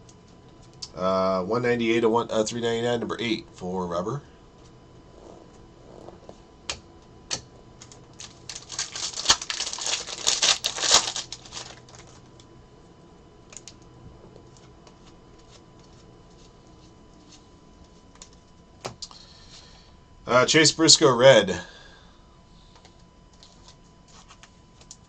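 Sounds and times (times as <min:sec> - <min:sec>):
card sleeves clicking and crinkling: 0:07.3 - 0:12.4.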